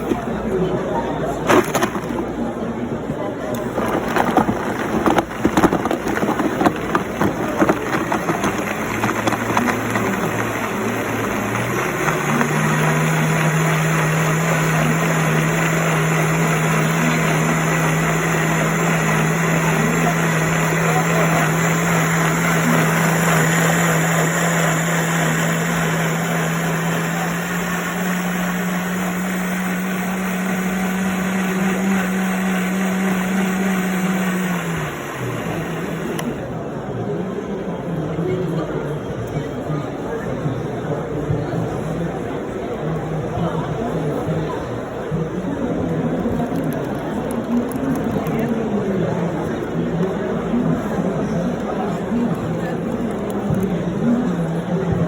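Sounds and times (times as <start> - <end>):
blender motor humming: 3.6 - 36.5.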